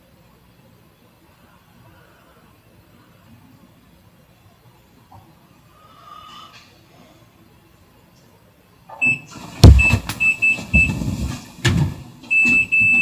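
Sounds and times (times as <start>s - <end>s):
loud thumps: 9.5s - 13.0s.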